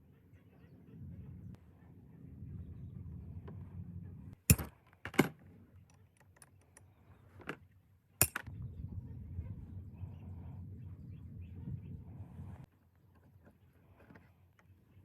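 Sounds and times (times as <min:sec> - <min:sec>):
low background rumble: 0:00.0 - 0:04.4, 0:08.3 - 0:12.7.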